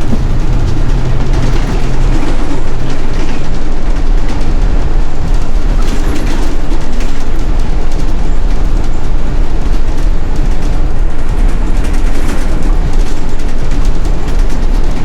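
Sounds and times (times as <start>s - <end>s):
bus engine and road rumble: 0.0s - 15.0s
light rattling in bus cabin: 0.0s - 15.0s.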